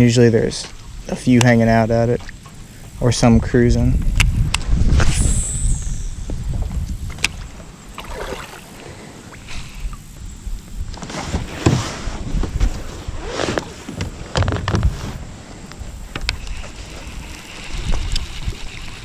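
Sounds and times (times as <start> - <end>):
wind rumble on microphone: 2.9 - 8.3, 9.5 - 19.0
paddle splashing in water: 7.4 - 9.8.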